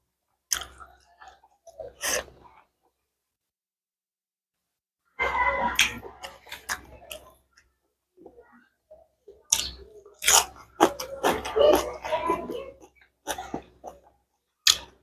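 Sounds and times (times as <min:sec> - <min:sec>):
person chewing crunchy food: 0:09.5 - 0:15.0.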